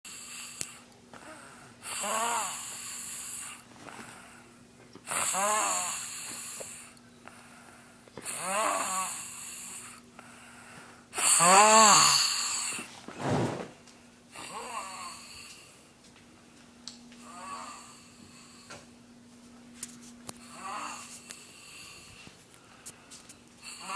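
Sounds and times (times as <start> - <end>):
boy snoring loudly: 1.8 - 3.6, 5.1 - 6.9, 8.2 - 10.0, 11.2 - 12.9, 14.4 - 15.4, 17.3 - 18.5, 20.5 - 22.0, 23.6 - 23.9.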